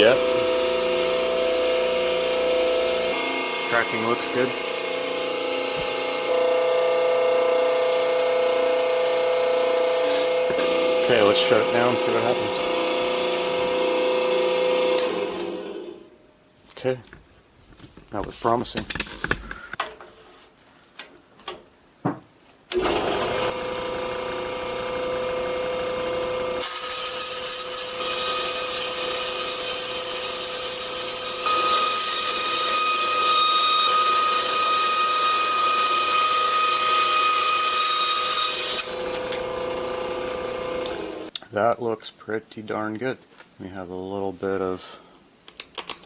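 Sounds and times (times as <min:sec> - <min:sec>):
band saw running: 0:00.0 - 0:16.0, 0:22.7 - 0:41.3.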